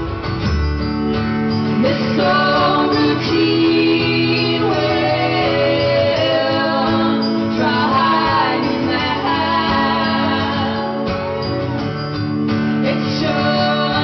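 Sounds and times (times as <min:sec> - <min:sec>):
strummed acoustic guitar: 0:00.0 - 0:14.0
women singing in harmony: 0:01.7 - 0:11.5, 0:12.8 - 0:14.0.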